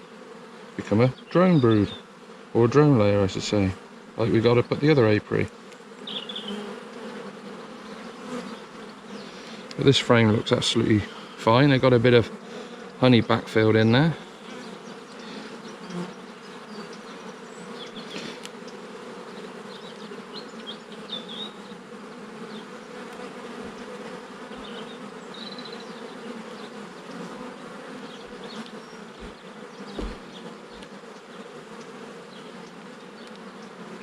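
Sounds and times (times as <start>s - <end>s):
bees buzzing: 0.0s - 34.0s
dull knock: 29.2s - 30.3s.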